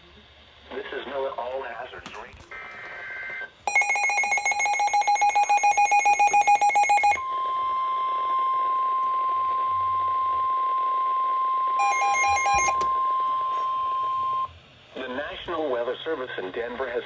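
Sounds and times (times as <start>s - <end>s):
long steady alarm tone: 3.6s - 14.6s
rapid electronic beeping: 3.7s - 7.2s.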